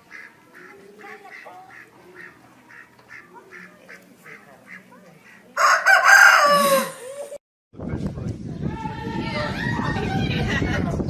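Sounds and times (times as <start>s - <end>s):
ducks quacking: 0.0s - 6.2s.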